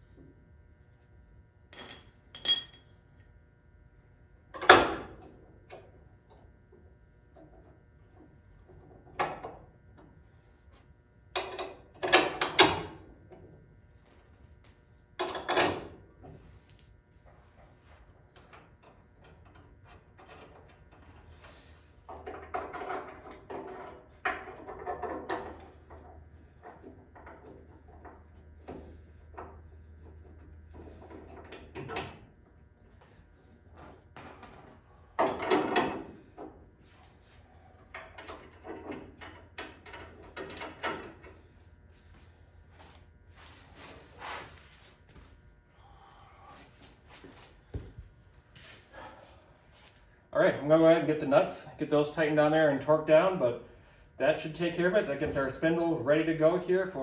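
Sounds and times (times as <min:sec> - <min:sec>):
metal parts and tools clinking: 0:01.8 - 0:02.8.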